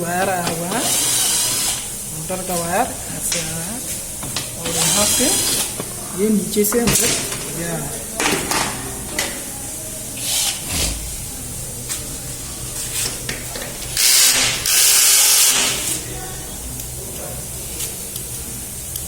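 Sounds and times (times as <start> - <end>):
hissing spray bursts: 0.2 - 6.2, 6.9 - 16.7
steady low hum: 7.3 - 13.3.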